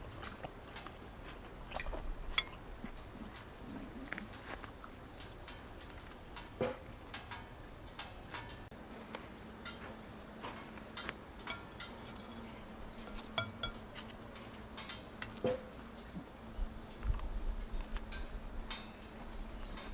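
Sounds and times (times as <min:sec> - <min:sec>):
cutlery and dishes clinking: 0:11.4 - 0:14.1.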